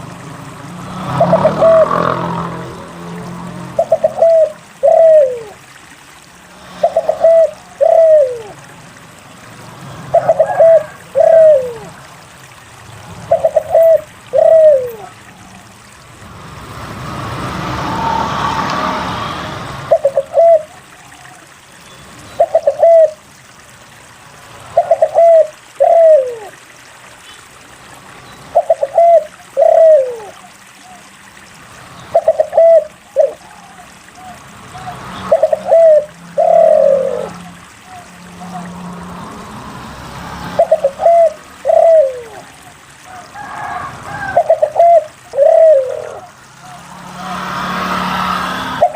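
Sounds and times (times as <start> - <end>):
dove cooing: 1.1 - 2.4, 3.7 - 5.6, 6.6 - 8.6, 10.1 - 12.2, 13.2 - 15.2, 19.9 - 21.4, 22.4 - 23.2, 24.8 - 26.5, 28.6 - 30.5, 32.1 - 38.7, 40.6 - 47.4.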